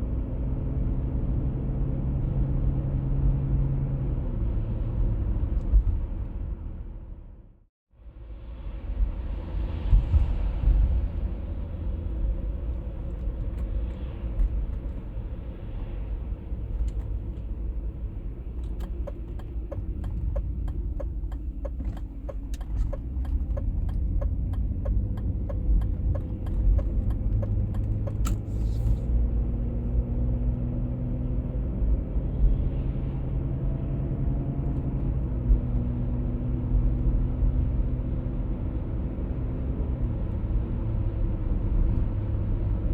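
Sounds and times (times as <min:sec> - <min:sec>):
road and drivetrain rumble: 0:00.0 - 0:42.9
regular ticking: 0:18.6 - 0:28.5.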